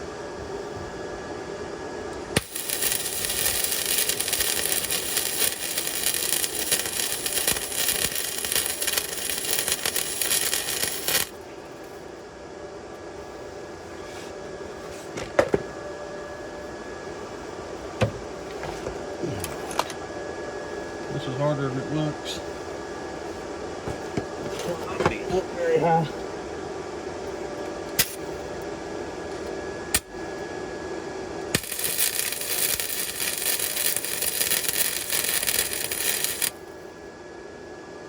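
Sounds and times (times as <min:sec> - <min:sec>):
machine hum: 0:00.0 - 0:38.0
welding arc crackle: 0:02.4 - 0:12.0, 0:28.0 - 0:28.3, 0:31.5 - 0:36.6.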